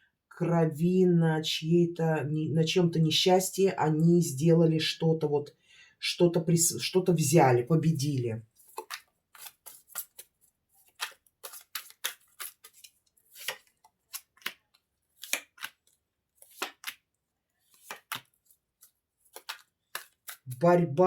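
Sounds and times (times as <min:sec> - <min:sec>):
cards being shuffled: 0:08.5 - 0:20.9.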